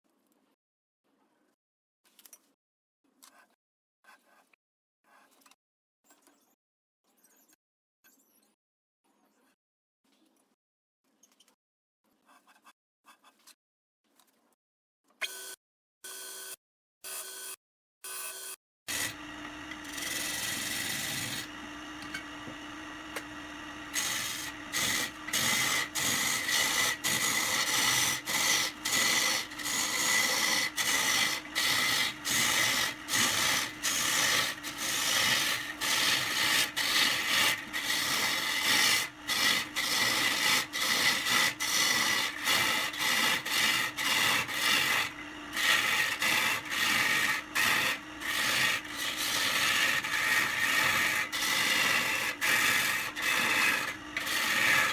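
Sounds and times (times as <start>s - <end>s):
tool rasping on wood: 18.9s - 54.9s.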